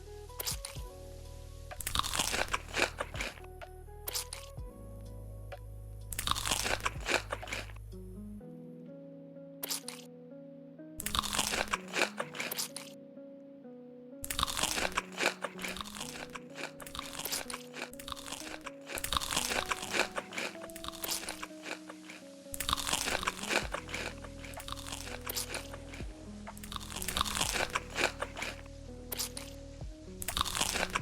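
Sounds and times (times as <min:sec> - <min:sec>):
background music simple melody: 0:00.0 - 0:31.0
crunchy food being chewed: 0:01.8 - 0:03.4, 0:04.1 - 0:04.6, 0:06.1 - 0:07.8, 0:09.6 - 0:10.1, 0:11.0 - 0:12.9, 0:14.2 - 0:29.5, 0:30.2 - 0:31.0.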